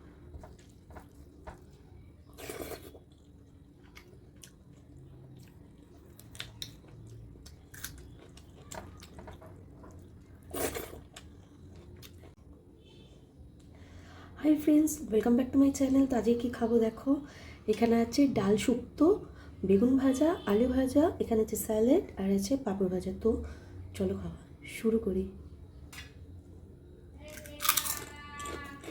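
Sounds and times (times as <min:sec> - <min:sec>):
chewing with small clicks: 0:02.6 - 0:12.4.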